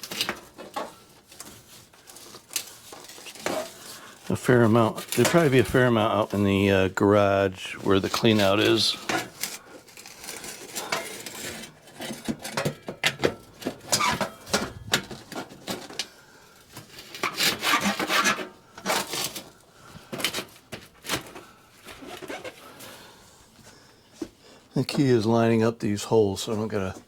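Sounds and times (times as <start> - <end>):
metal pipe scraping and knocking: 10.7 - 15.6.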